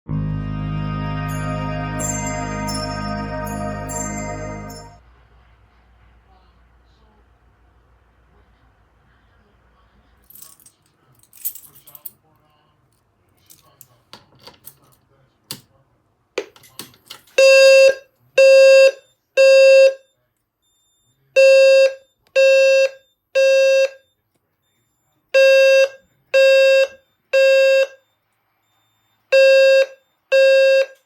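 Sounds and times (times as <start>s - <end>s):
fire alarm buzzing tones: 25.4s - 31.0s.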